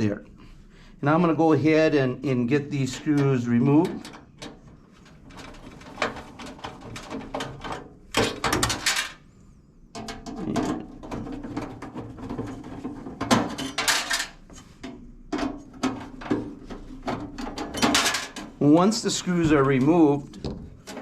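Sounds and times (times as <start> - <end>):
sheet metal rattling: 10.0 - 21.0.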